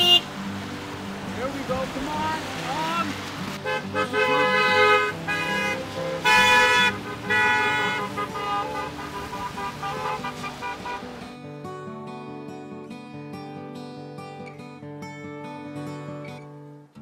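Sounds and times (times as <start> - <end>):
car horn honking: 0.0 - 0.3, 3.6 - 11.2
street sound: 0.0 - 14.3
acoustic guitar music: 0.0 - 17.0.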